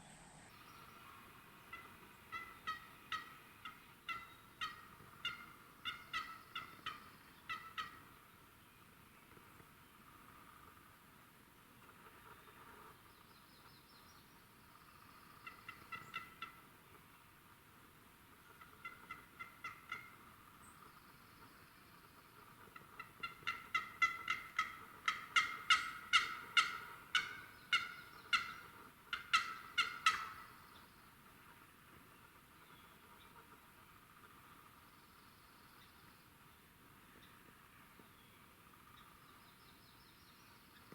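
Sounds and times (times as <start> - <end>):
turkey yelping: 1.7 - 8.0, 18.6 - 20.1, 22.8 - 30.5.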